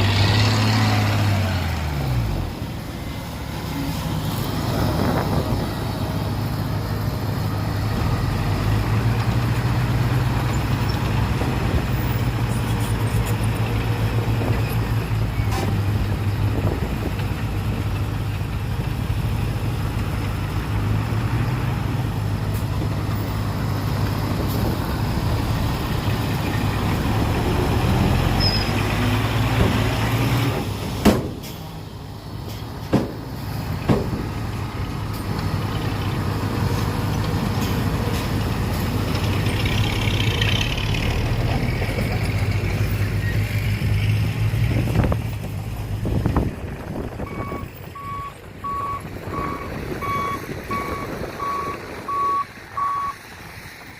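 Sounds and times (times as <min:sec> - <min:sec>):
diesel engine droning: 0:00.0 - 0:53.9
sharp knocks: 0:31.0 - 0:31.4, 0:32.9 - 0:33.2, 0:33.8 - 0:34.3.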